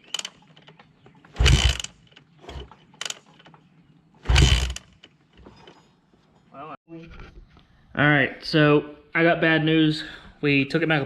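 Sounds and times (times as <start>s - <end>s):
mechanical clatter: 0.0s - 3.6s, 4.2s - 5.2s
dirt bike kick-start: 1.3s - 3.5s, 4.2s - 5.1s
engine turning over: 1.4s - 3.2s, 4.2s - 4.9s.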